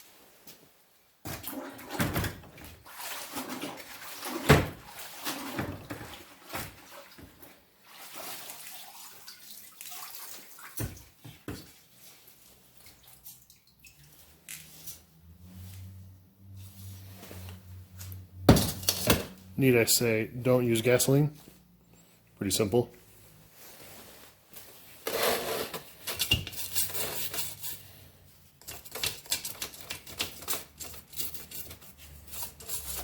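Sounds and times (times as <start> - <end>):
liquid sloshing and splashing: 1.3 - 16.0.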